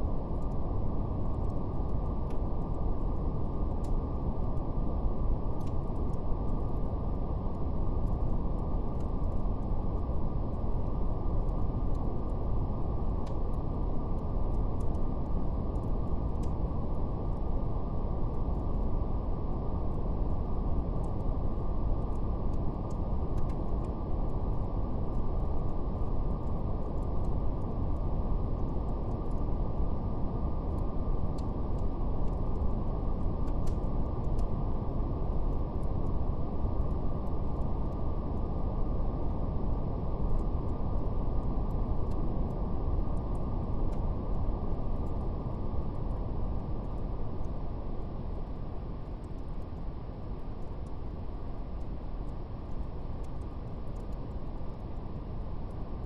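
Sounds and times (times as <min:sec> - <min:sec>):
wood fire crackling: 0:00.0 - 0:38.5
deep rumbling brown noise: 0:00.0 - 0:56.0.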